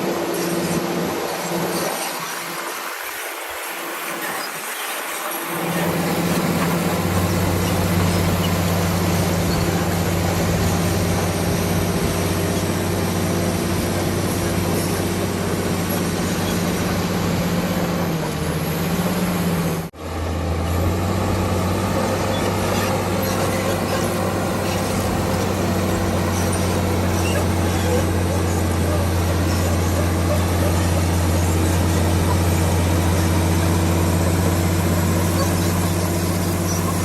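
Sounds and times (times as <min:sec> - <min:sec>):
bulldozer diesel engine drone: 0:00.0 - 0:37.0.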